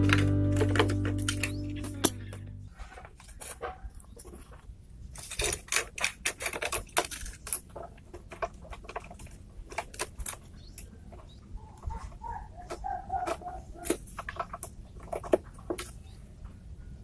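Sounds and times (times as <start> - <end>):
small hard objects clicking: 5.1 - 11.2.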